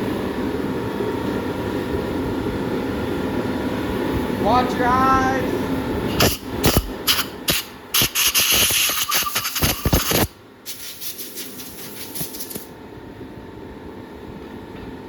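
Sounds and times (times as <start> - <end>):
compressed air blow gun hissing: 6.2 - 12.7.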